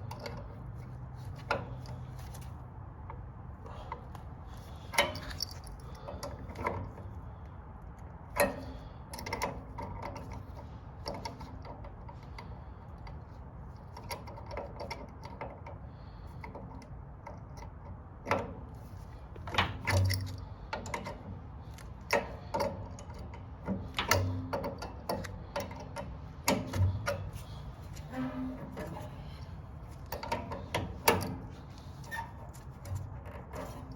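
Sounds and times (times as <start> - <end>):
low steady hum: 0.0 - 33.9
hand tools clicking and knocking: 22.0 - 28.1.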